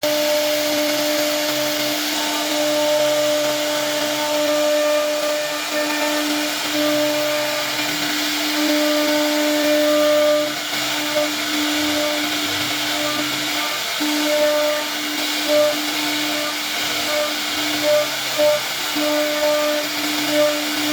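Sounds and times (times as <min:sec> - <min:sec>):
router spindle whining: 0:00.0 - 0:20.9
rushing hiss: 0:00.1 - 0:20.9.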